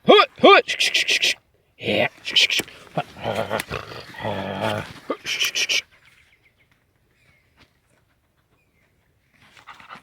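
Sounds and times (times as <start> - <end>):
dog growling: 2.9 - 5.1.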